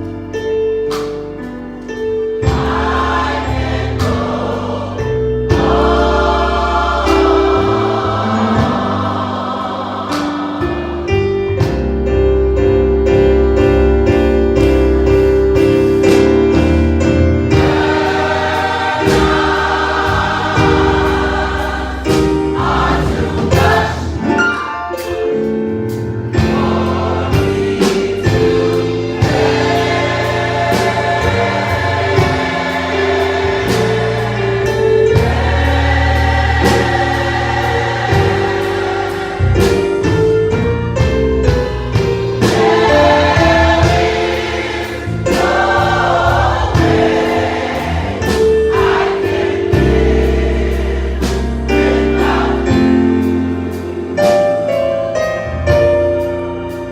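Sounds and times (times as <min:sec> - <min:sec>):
keyboard accompaniment: 0:00.0 - 0:56.9
choir singing gospel in harmony: 0:01.9 - 0:56.9.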